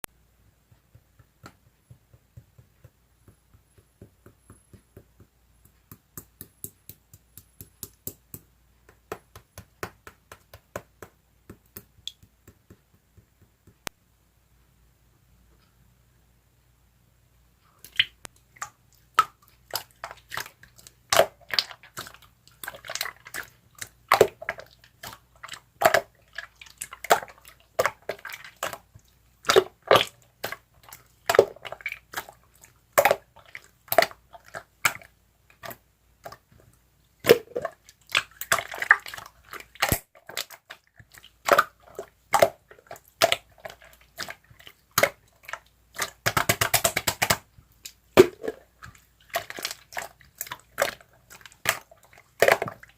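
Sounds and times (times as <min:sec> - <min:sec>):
slime popping and squishing: 0:37.2 - 0:52.9.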